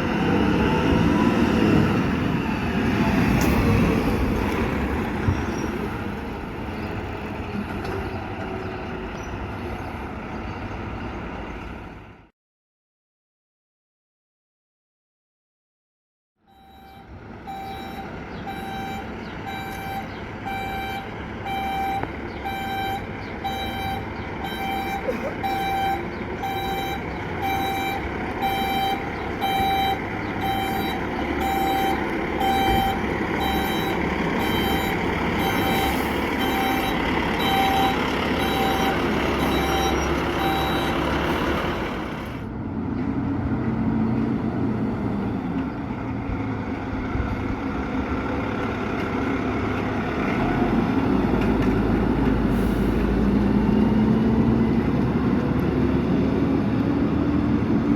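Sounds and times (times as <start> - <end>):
fire engine running: 0.0 - 12.3, 16.5 - 57.9
reversing alarm beeps: 16.5 - 41.0.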